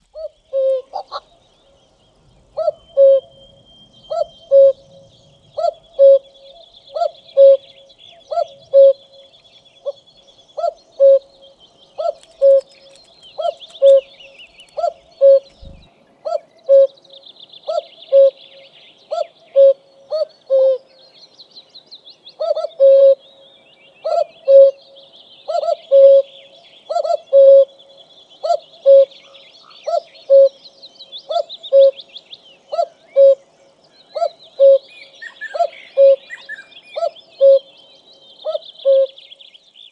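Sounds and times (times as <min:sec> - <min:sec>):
cuckoo calling: 0:00.0 - 0:01.5, 0:02.6 - 0:21.2, 0:22.3 - 0:32.0, 0:32.6 - 0:39.2
nestlings chirping: 0:12.0 - 0:20.6.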